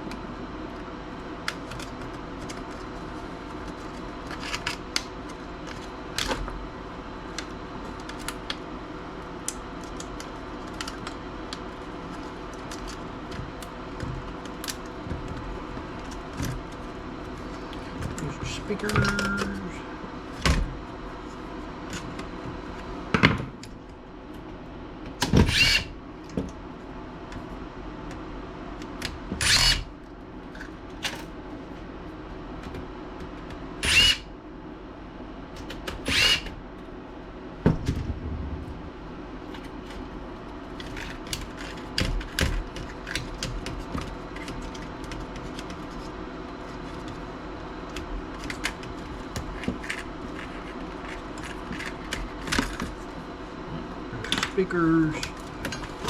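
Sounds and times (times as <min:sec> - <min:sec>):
electric screwdriver whine: 0:25.4 - 0:25.9, 0:29.4 - 0:29.9, 0:33.8 - 0:34.2, 0:36.0 - 0:36.5.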